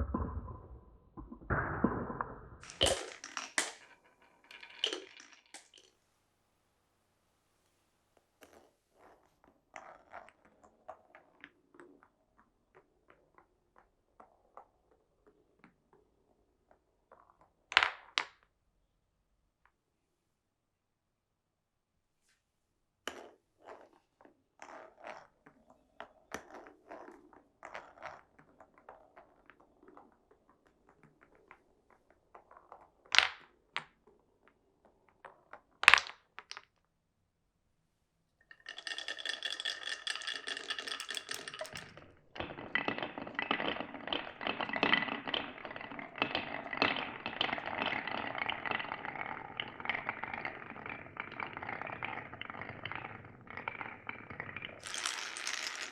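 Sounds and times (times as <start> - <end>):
marbles rolling on wooden track: 0.0 - 5.9, 8.4 - 18.4, 23.1 - 24.0, 24.6 - 36.8, 38.4 - 55.9
clatter of many marbles: 0.0 - 6.0, 23.1 - 36.8, 38.4 - 55.9.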